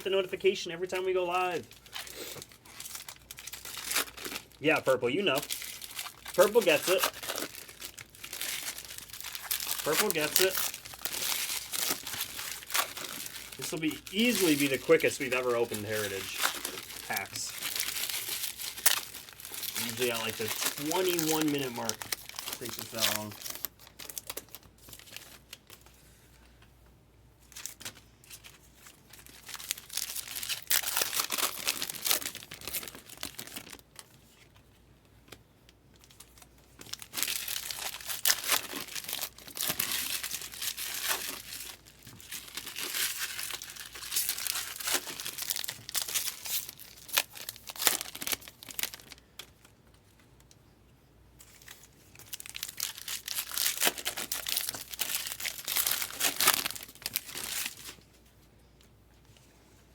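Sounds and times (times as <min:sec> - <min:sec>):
card wrappers tearing and crinkling: 0:00.1 - 0:25.9, 0:27.4 - 0:34.6, 0:35.9 - 0:49.7, 0:51.4 - 0:58.0.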